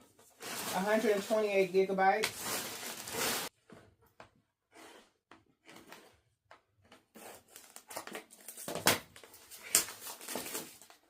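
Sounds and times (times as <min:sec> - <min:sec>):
packaging rustling and crinkling: 0:00.0 - 0:03.5, 0:07.5 - 0:11.0
packaging scraping: 0:00.2 - 0:03.5.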